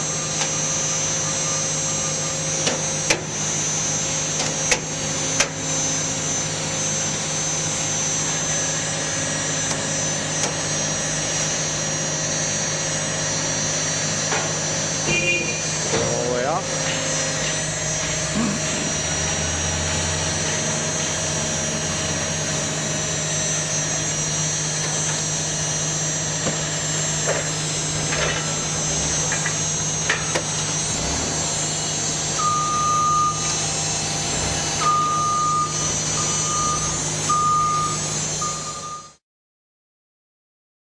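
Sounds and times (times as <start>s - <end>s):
baler machinery droning: 0.0s - 39.2s
warning beeper beeping: 15.1s - 16.2s, 32.3s - 33.8s, 34.8s - 39.2s.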